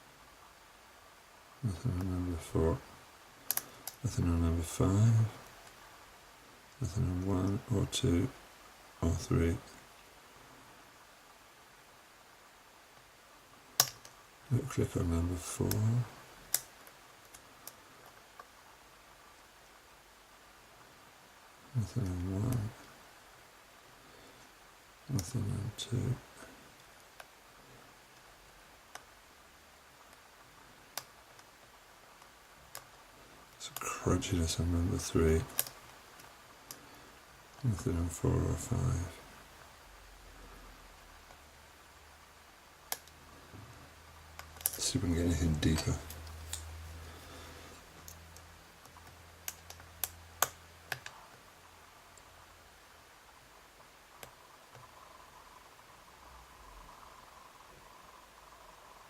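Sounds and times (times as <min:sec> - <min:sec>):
lock pick clicks and ticks: 0:13.8 - 0:14.2.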